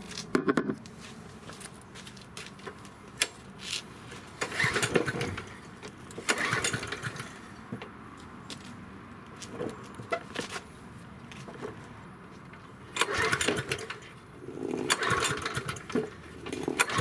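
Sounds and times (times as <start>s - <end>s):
mower engine turning over: 2.6s - 7.6s, 12.8s - 17.0s
lawn mower recoil starter pulled: 3.2s - 7.6s, 12.9s - 17.0s.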